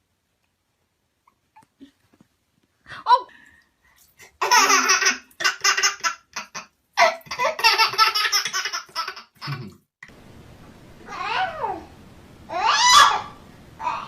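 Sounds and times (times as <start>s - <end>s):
baby laughing: 4.4s - 9.8s.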